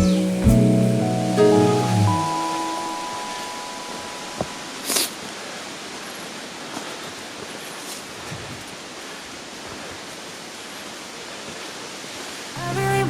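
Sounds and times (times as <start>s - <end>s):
even rushing hiss: 0.0s - 5.2s.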